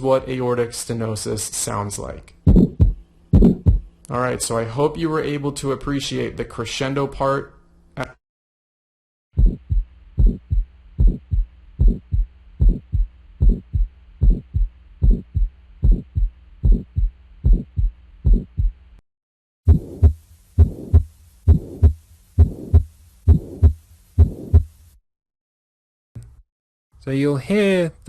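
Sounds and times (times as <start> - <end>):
heartbeat through stethoscope: 2.4 - 3.9, 9.3 - 18.8, 19.7 - 24.8
heart murmur: 2.5 - 3.9, 9.4 - 18.8, 19.7 - 24.7.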